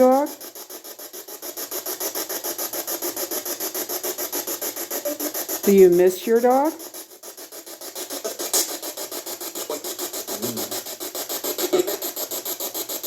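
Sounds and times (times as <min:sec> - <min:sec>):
fast chopped radio static: 0:00.0 - 0:13.0
radio voice scrap: 0:09.6 - 0:10.8.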